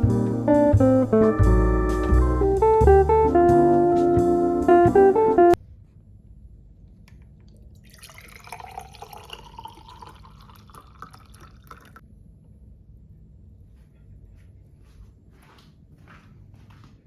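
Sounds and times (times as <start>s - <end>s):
music: 0.0s - 5.6s
water running or dripping: 7.5s - 12.0s.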